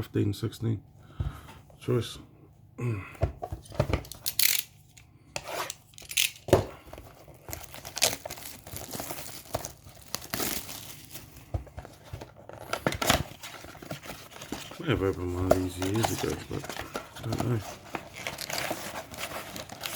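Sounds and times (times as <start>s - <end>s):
packaging ripping and crinkling: 7.3s - 11.4s, 12.4s - 19.9s.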